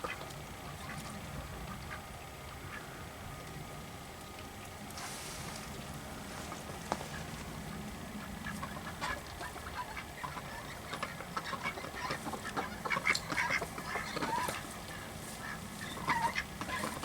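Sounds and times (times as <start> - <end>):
ducks quacking: 0.0 - 3.0, 6.4 - 17.0.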